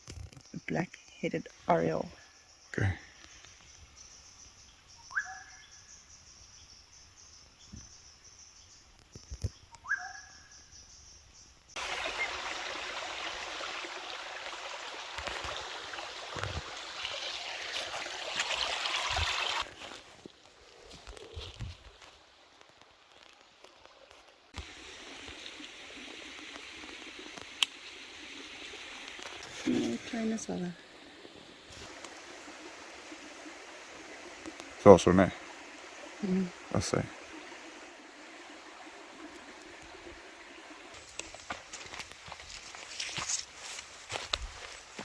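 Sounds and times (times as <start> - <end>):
insects humming: 0.4 - 15.9, 24.6 - 40.9
bird whistled call: 5.0 - 5.7, 9.7 - 10.6
stream water flowing: 11.8 - 45.0.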